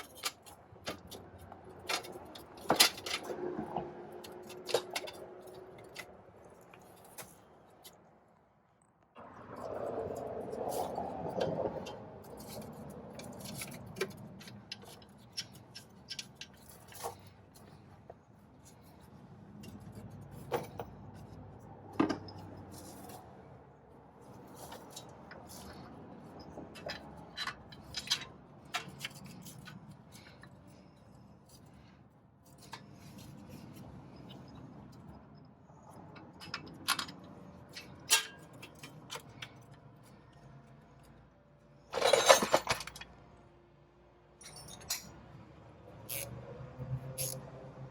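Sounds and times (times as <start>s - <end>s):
metallic tool clinks and scrapes: 36.3s - 39.7s, 41.9s - 43.1s, 44.4s - 45.2s, 47.2s - 47.4s.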